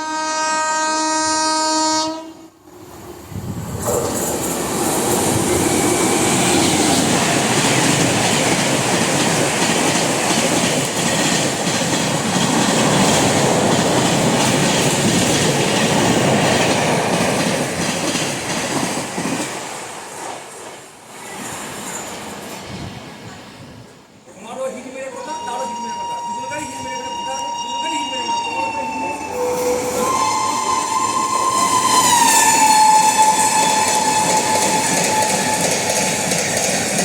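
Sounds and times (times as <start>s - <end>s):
train wheels clattering on rails: 3.8s - 23.2s, 29.6s - 37.0s.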